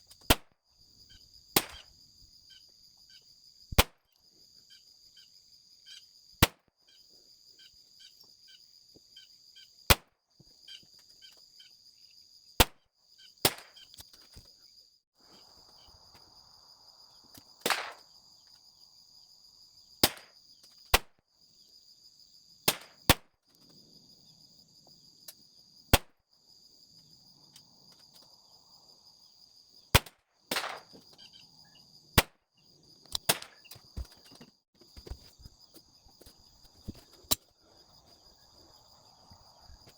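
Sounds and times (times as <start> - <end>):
pistol shots: 17.7 - 18.0, 30.0 - 31.0.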